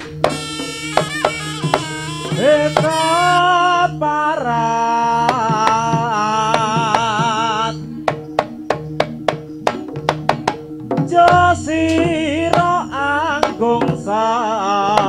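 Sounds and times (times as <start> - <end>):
sharp drum strokes: 0.0 - 3.4, 9.7 - 14.3
high wavering melody: 0.0 - 15.0
low ringing tone: 0.0 - 15.0.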